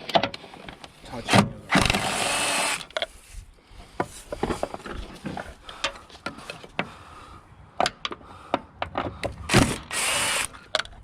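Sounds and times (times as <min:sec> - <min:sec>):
hand tools clicking and tapping: 0:07.8 - 0:11.0.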